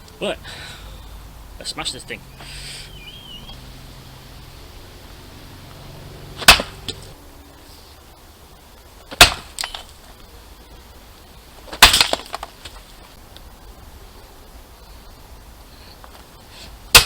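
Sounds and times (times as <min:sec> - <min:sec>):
sledgehammer striking padlock: 0:06.4 - 0:07.0, 0:09.1 - 0:09.8, 0:11.7 - 0:12.4.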